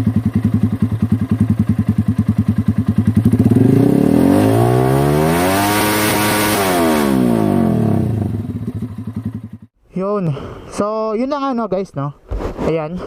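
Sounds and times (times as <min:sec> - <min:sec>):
motorcycle engine revving: 0:00.0 - 0:09.7.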